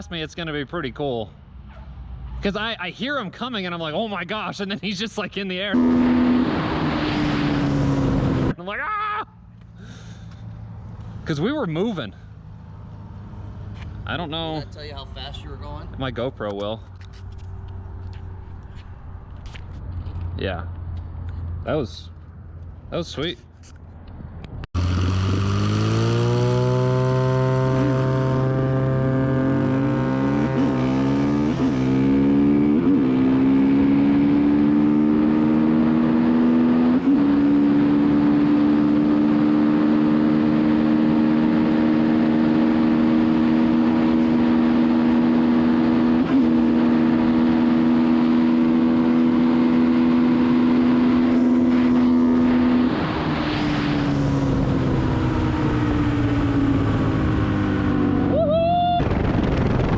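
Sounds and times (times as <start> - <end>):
quad engine accelerating: 5.7 - 8.6, 24.8 - 59.9.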